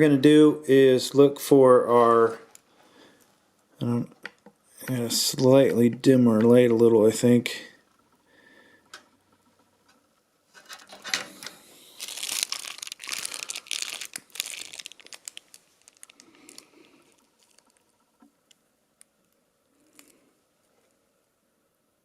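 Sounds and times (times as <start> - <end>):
plastic leads rustling and clicking: 9.8 - 20.2.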